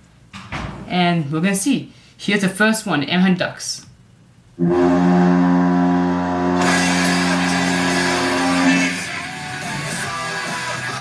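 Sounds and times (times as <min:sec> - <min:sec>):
arena goal horn: 0:04.6 - 0:09.5.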